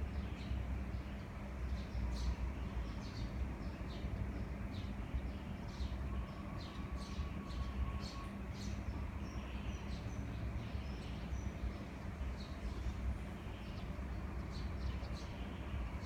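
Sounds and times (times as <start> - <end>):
birds chirping: 0.3 - 16.0.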